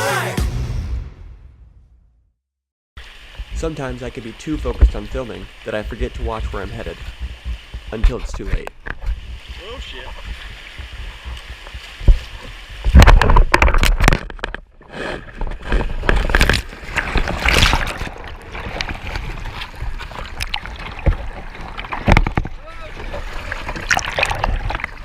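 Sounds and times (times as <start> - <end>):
river rapids splashing over kayak: 9.3 - 13.0, 16.4 - 25.0.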